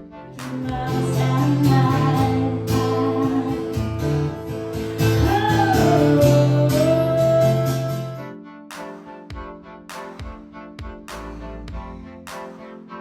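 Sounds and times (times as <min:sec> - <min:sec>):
person singing: 0:00.3 - 0:08.3
strummed acoustic guitar: 0:00.3 - 0:08.3.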